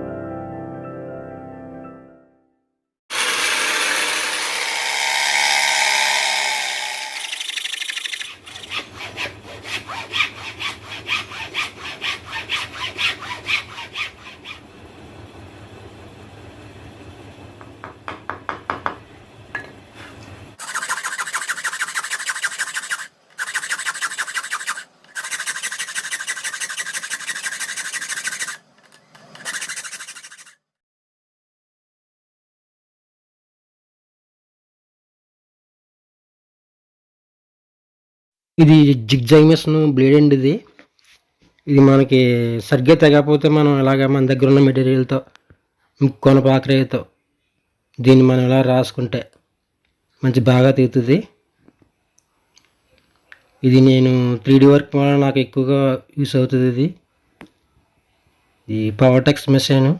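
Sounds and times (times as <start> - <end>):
jigsaw cutting wood: 3.1 - 14.6, 20.6 - 30.6.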